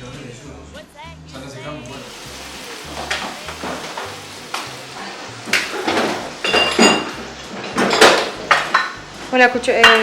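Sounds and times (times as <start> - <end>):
dishes and cutlery clattering: 2.9 - 10.0.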